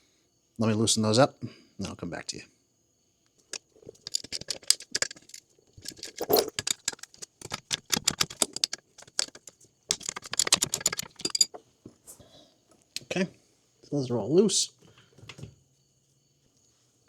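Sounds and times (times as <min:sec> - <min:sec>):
socket ratchet clicking: 0:03.5 - 0:11.6.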